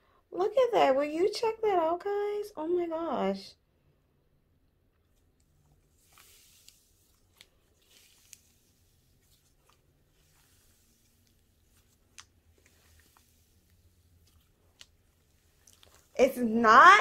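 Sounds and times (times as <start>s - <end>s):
slime stretching soft tearing: 5.0s - 16.2s.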